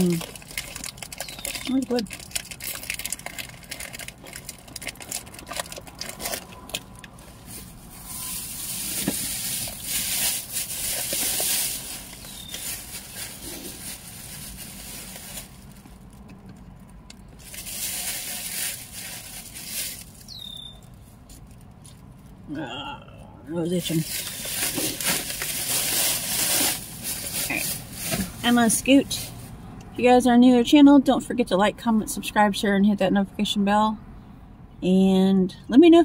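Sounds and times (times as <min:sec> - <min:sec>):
plastic chip bag crinkling: 0:00.0 - 0:20.9, 0:23.8 - 0:29.4.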